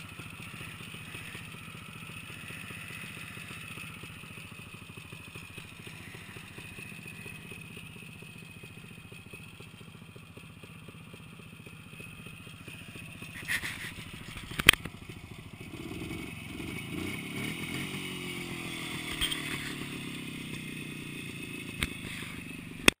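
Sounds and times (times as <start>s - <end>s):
engine revving: 0.0s - 9.5s, 11.9s - 23.0s
motorcycle engine running: 0.0s - 23.0s.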